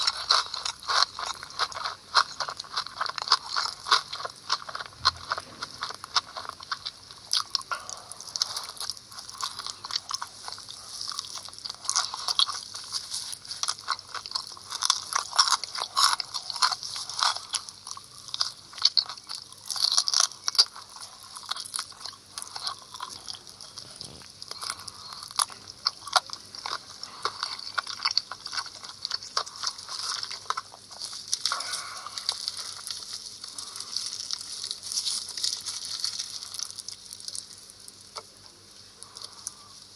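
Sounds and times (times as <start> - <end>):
chewing crunchy food: 0.0 - 39.9.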